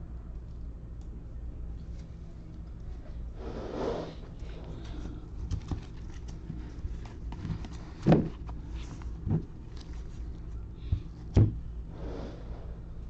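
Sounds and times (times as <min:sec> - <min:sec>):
low steady hum: 0:00.0 - 0:13.0
dull thump: 0:11.0 - 0:11.6.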